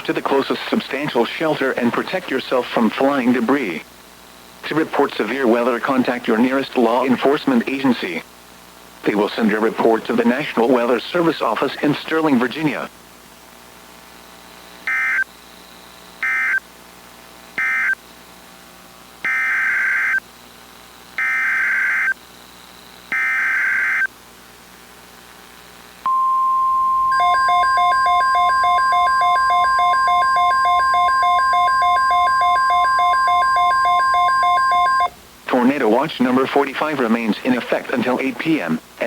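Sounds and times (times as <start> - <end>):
steady warning alarm tone: 14.9 - 15.3, 16.2 - 16.6, 17.6 - 18.0, 19.3 - 20.2, 21.2 - 22.2, 23.1 - 24.1, 26.1 - 35.1
fast pulsing beep: 26.1 - 35.1.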